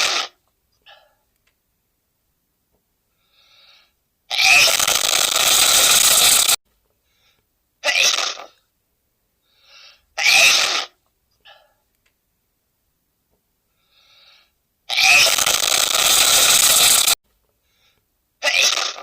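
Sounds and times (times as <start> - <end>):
faint short breaths: 3.1 - 4.0, 6.9 - 7.5, 9.4 - 10.2, 13.7 - 14.6, 17.5 - 18.1.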